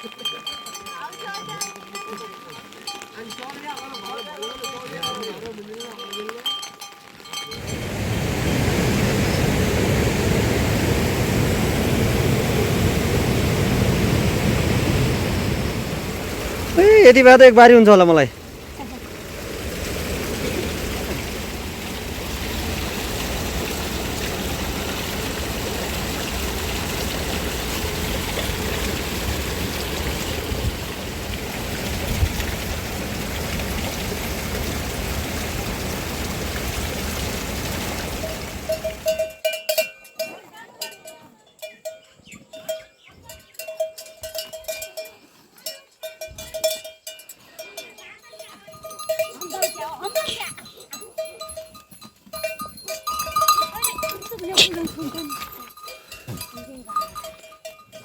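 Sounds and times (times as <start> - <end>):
livestock bells clinking: 0.0 - 9.4, 14.7 - 19.4, 38.3 - 58.0
loud steady rushing noise: 7.6 - 18.3.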